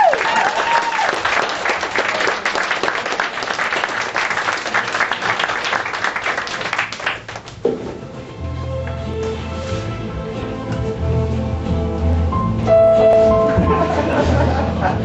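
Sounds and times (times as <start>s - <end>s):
audience applauding: 0.0s - 7.6s
soft music: 8.0s - 15.0s.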